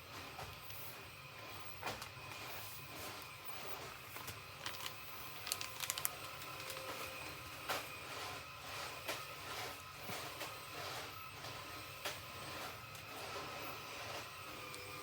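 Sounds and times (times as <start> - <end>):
packaging clicks and crinkles: 4.2 - 8.0.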